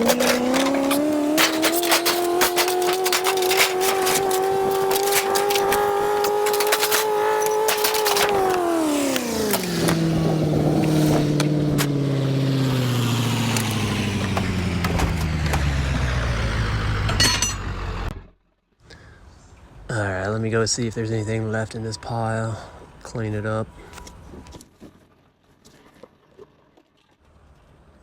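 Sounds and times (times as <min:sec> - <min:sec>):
sharp rattling clicks: 0:00.0 - 0:10.1
vehicle engine winding down: 0:00.0 - 0:18.4.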